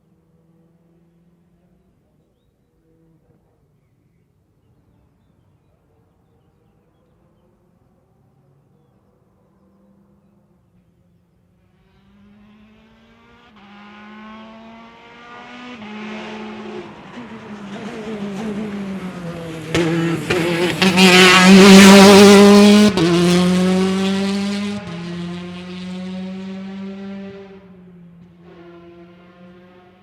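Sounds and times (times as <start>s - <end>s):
rally car engine passing: 11.6s - 30.0s.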